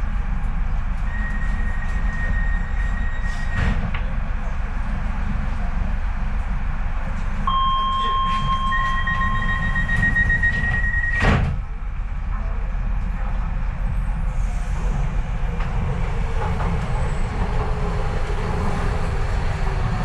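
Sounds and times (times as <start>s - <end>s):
train low rumble: 0.0s - 20.0s
train door warning beep: 7.5s - 11.3s
train doors thumping shut: 8.0s - 11.7s.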